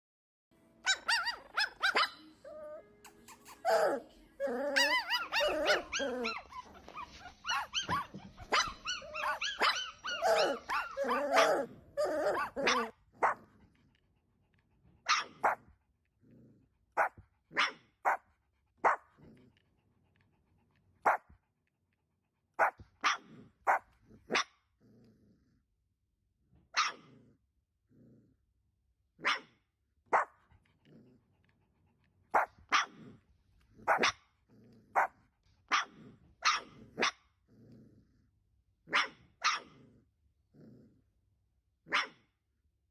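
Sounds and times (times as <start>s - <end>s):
puppy yipping: 0.8s - 13.4s, 15.1s - 15.6s, 22.6s - 24.5s, 33.9s - 34.2s, 35.7s - 37.2s
puppy grunting: 1.1s - 13.5s.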